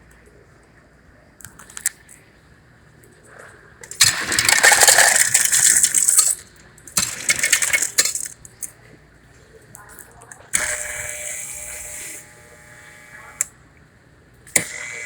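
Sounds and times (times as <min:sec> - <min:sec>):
ice cubes rattling into a cup: 0:03.9 - 0:08.4.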